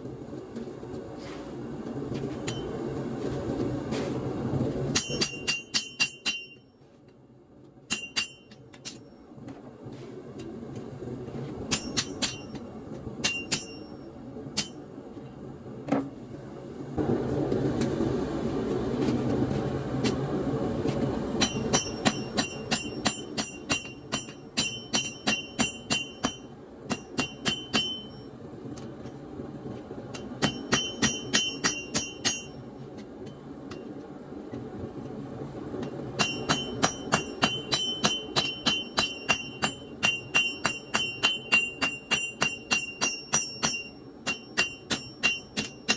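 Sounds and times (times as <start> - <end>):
hammer striking anvil: 4.9 - 6.7, 7.9 - 9.1, 11.7 - 15.0, 21.4 - 28.3, 30.2 - 32.7, 36.2 - 45.9
low rushing noise: 16.5 - 21.4.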